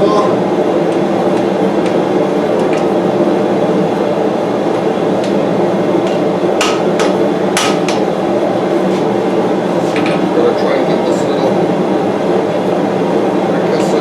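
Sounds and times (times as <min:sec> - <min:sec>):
gas forge burner rushing: 0:00.0 - 0:14.0
hammer striking steel on anvil: 0:06.0 - 0:08.1.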